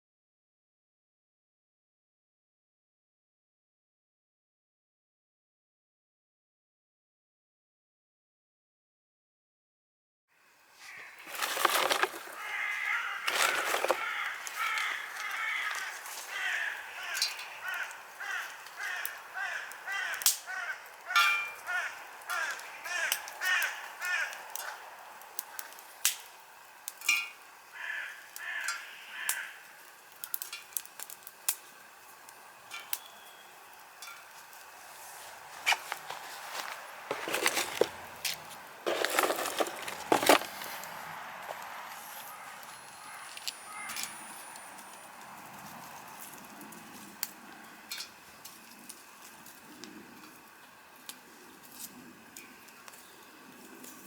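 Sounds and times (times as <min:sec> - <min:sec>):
campfire crackling: 0:10.5 - 0:54.0
bird cawing: 0:10.8 - 0:24.9, 0:27.6 - 0:30.5, 0:36.5 - 0:45.0.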